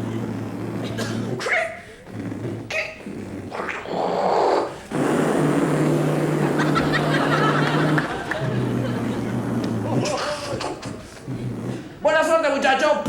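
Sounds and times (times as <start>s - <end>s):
mouth clicks: 0.7s - 6.4s.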